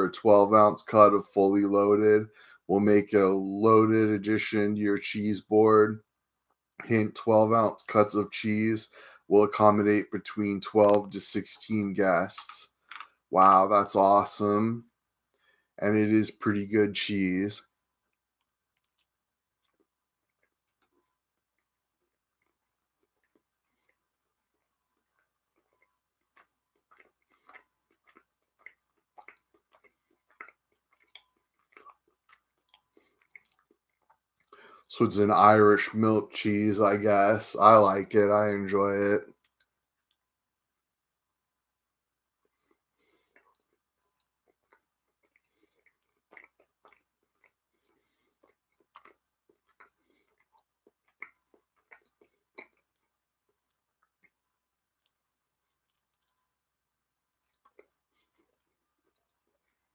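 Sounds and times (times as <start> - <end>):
person chewing: 12.4 - 13.7, 18.1 - 34.9, 39.3 - 40.2, 42.3 - 59.9.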